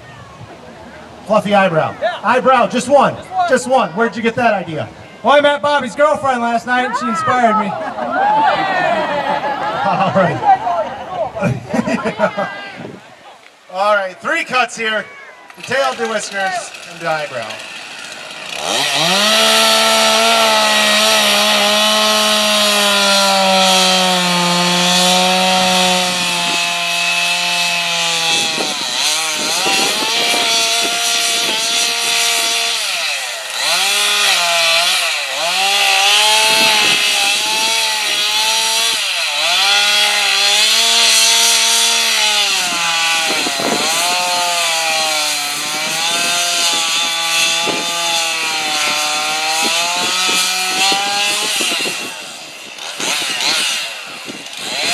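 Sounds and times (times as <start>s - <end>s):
chainsaw cutting wood: 15.5s - 54.9s.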